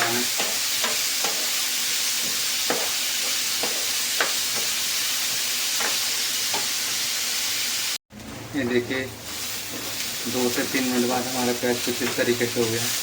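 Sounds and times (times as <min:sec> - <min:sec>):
spoon scraping a pan: 0:00.0 - 0:01.6
onions sizzling in hot oil: 0:00.0 - 0:13.0.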